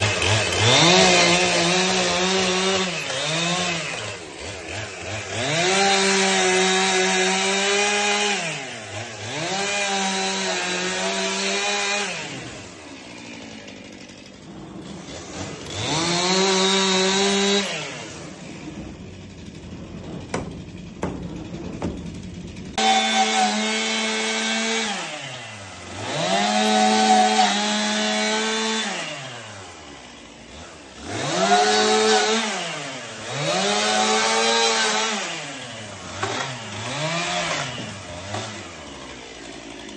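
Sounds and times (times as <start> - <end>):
chainsaw revving and cutting wood: 0.0 - 39.9
knocks: 19.6 - 22.7.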